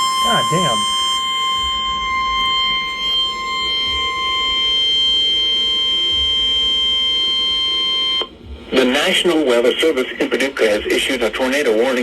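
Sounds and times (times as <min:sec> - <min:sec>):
high-pitched alarm tone: 0:00.0 - 0:09.1.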